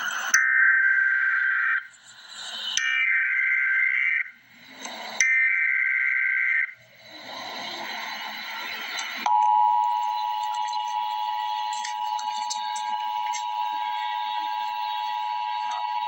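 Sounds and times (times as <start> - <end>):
data bursts: 0.0 - 16.0
two-tone attention signal: 9.2 - 16.0.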